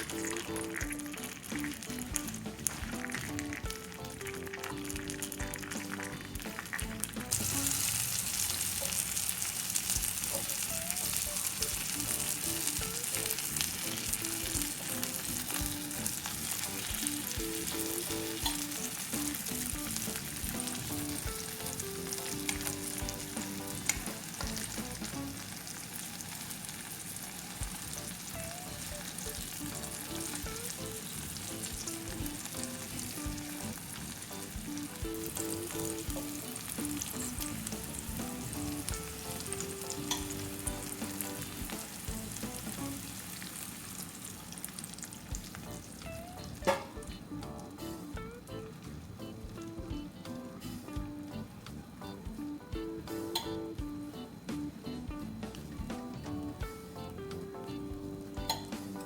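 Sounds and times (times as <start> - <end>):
food sizzling in a pan: 0.0 - 49.8, 58.0 - 59.0.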